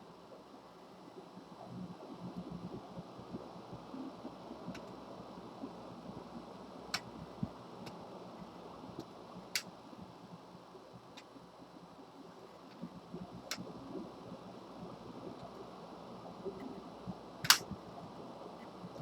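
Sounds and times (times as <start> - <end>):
faint steady hum: 0.0 - 19.0
small parts clicking: 17.4 - 17.6.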